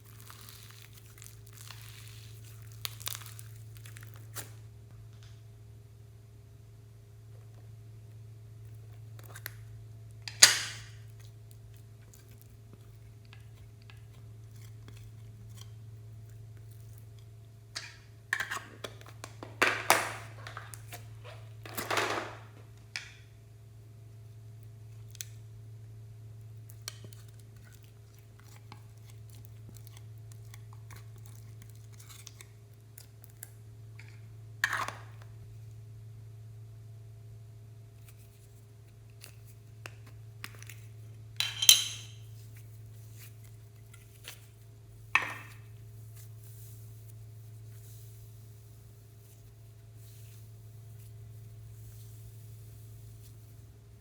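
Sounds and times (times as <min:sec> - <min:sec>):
slime sticky pops and crackles: 0:00.0 - 0:04.6
steady low hum: 0:00.0 - 0:54.0.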